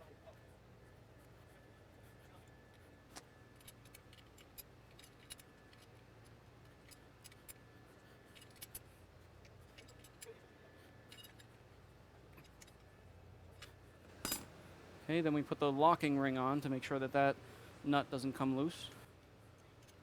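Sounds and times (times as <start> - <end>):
low room hum: 0.0 - 20.0
metal tool clicking: 14.1 - 14.6.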